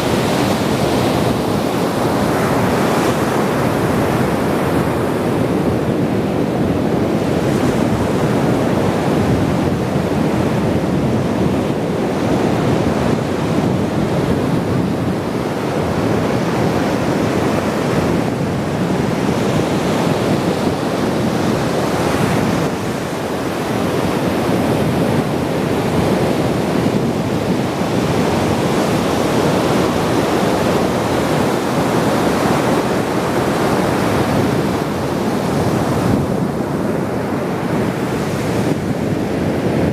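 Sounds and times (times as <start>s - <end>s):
ocean surf washing onto shore: 0.0s - 39.9s.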